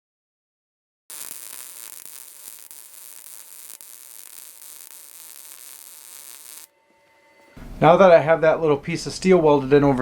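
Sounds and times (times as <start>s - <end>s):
welding arc crackling: 1.1s - 6.7s.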